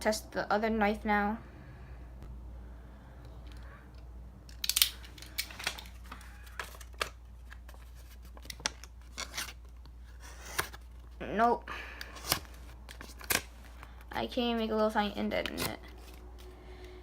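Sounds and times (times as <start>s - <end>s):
knife blade scraping paper: 9.2s - 9.6s, 10.2s - 10.8s.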